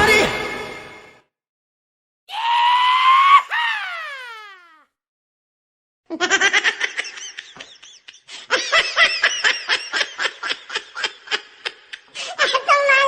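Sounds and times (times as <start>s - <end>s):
high-pitched laughter: 6.1s - 13.0s.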